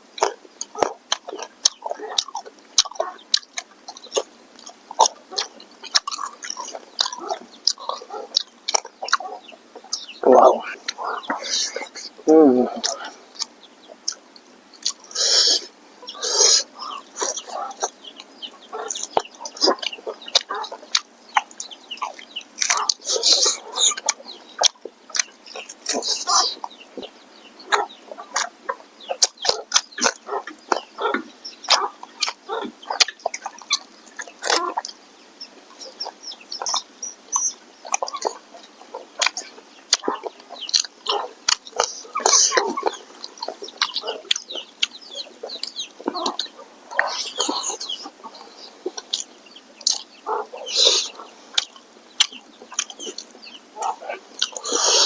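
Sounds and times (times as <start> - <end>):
wet lip-smacking and chewing: 0.2 - 9.3, 12.7 - 15.6, 16.2 - 27.1, 29.2 - 35.0, 35.7 - 55.0
loud slurping: 50.7 - 51.2, 54.4 - 55.0.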